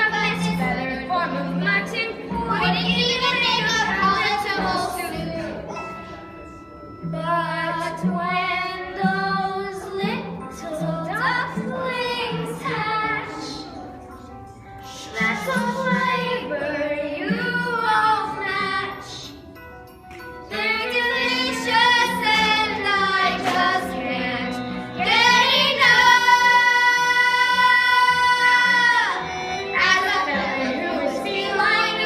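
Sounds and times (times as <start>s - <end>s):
children singing: 0.0s - 5.9s, 14.8s - 19.3s, 20.5s - 32.0s
instrumental accompaniment: 0.0s - 32.0s.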